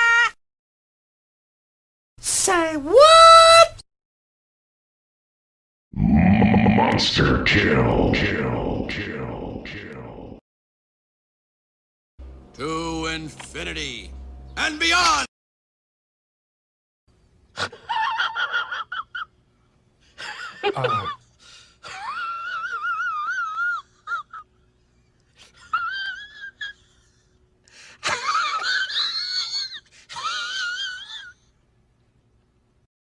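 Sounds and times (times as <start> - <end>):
high-pitched voice squeals: 2.3 - 3.8.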